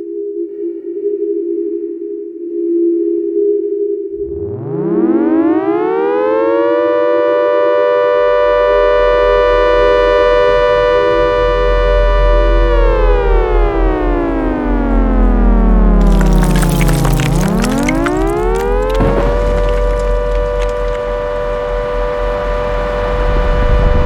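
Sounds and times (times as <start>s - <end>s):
deep rumble: 8.6s - 24.0s.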